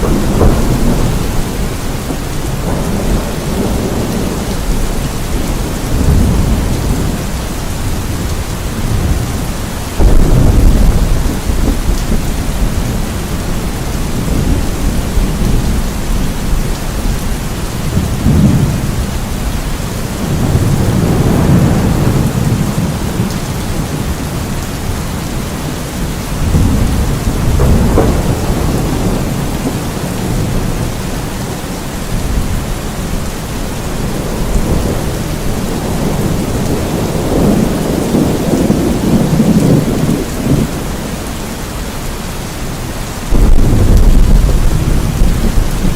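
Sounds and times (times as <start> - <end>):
thunder rolling: 0.0 - 41.3, 43.3 - 45.9
heavy rain: 0.0 - 45.9.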